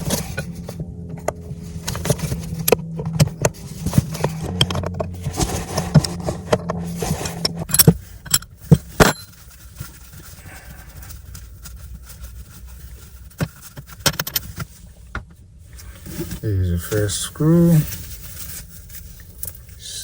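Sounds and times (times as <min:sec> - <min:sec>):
metal tools clinking and scraping: 0:00.0 - 0:11.3
steady low hum: 0:00.0 - 0:20.0.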